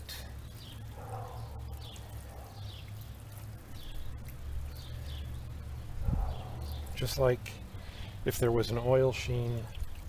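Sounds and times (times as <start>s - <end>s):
small bird chirping: 0.0s - 8.0s.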